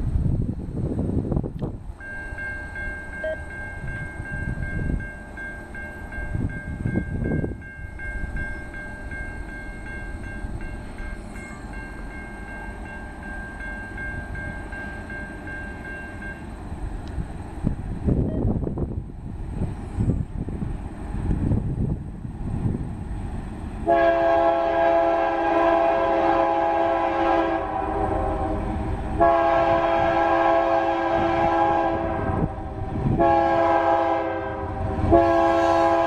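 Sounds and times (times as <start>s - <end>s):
freight train rumbling past: 0.0s - 36.0s
high-pitched ringing tone: 2.0s - 16.6s.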